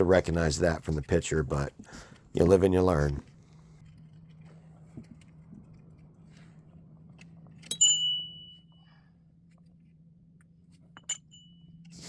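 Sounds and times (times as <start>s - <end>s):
faint low hum: 0.0s - 12.0s
metal clink: 7.6s - 8.8s, 11.0s - 11.7s.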